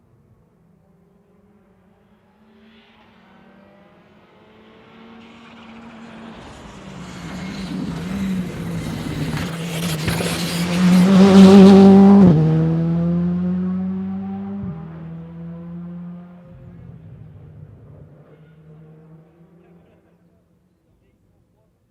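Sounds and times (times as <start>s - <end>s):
rally car engine approaching: 0.3s - 20.8s.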